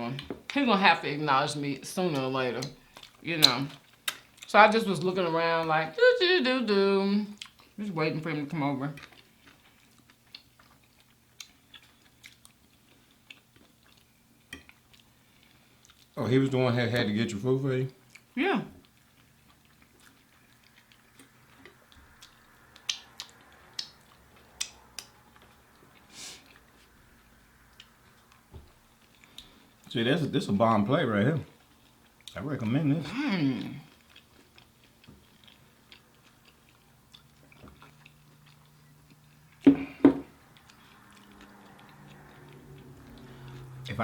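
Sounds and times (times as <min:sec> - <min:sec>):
chewing and mouth sounds: 0:02.2 - 0:05.7, 0:07.3 - 0:07.8, 0:08.9 - 0:16.2, 0:17.9 - 0:29.9, 0:33.6 - 0:44.0.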